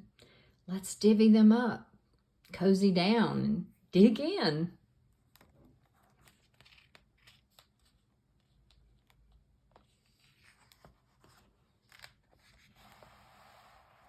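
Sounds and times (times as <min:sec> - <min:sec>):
paper page turning: 0:05.2 - 0:14.0.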